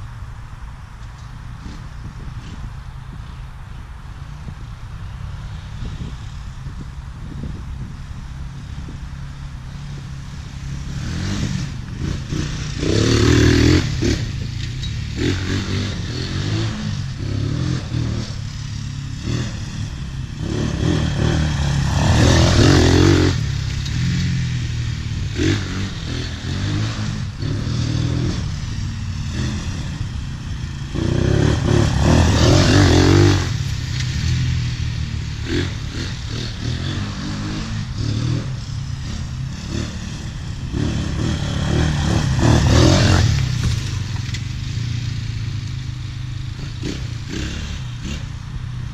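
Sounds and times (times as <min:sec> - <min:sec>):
quad engine revving: 0:10.7 - 0:45.6, 0:46.5 - 0:48.5.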